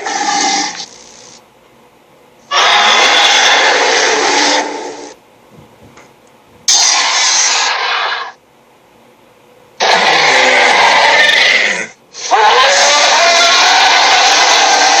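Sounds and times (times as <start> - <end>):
dinosaur roaring: 0.0 - 0.8, 2.5 - 5.2, 6.7 - 8.3, 9.8 - 15.0.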